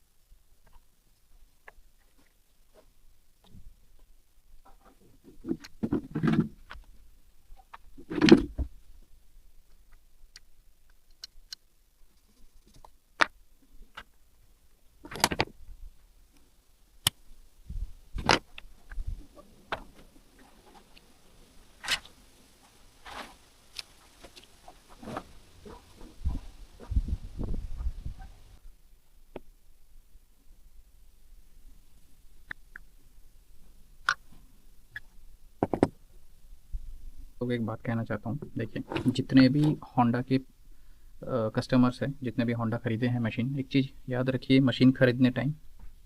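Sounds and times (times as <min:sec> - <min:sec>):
objects clicking and knocking: 0:35.6 - 0:36.0.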